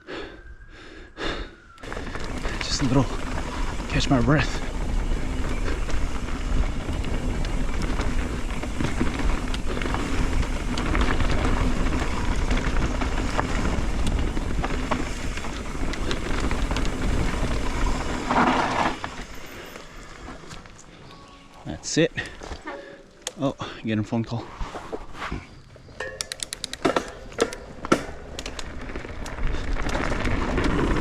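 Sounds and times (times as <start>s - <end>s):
bike tyre rumble: 1.2s - 23.0s, 23.6s - 31.0s
wind buffeting microphone: 1.8s - 19.0s
bike clicks and rattles: 1.8s - 21.3s, 22.2s - 23.4s, 24.6s - 31.0s
bike scraping to a stop: 1.8s - 23.0s, 26.9s - 31.0s.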